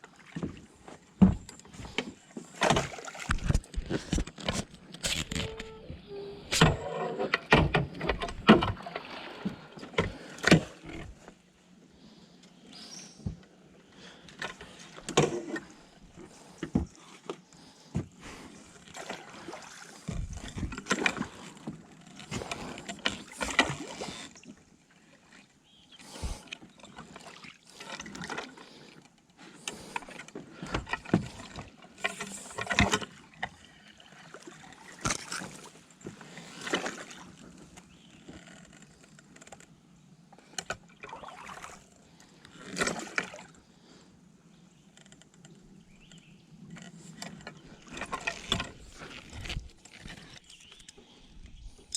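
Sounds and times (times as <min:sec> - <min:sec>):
water sounds: 0:00.0 - 0:11.4, 0:13.9 - 0:39.6, 0:40.4 - 0:43.8.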